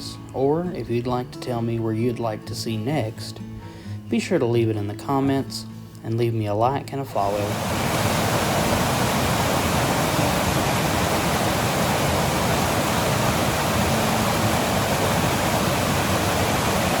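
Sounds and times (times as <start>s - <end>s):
wind buffeting microphone: 7.4s - 17.0s.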